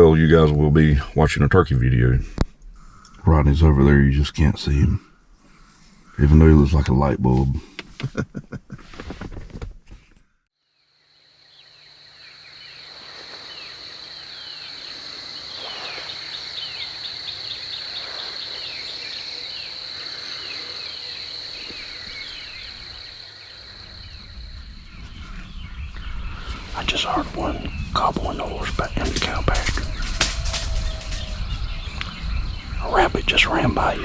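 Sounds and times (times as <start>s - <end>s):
falling bird chirps: 11.3s - 34.0s.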